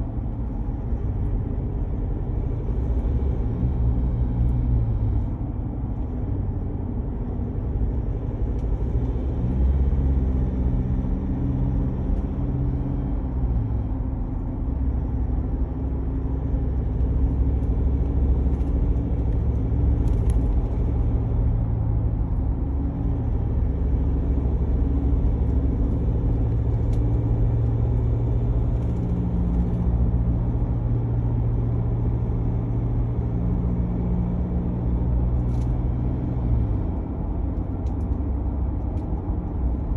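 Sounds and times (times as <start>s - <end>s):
truck engine low drone: 0.0s - 39.9s
tyre road noise: 0.0s - 39.9s.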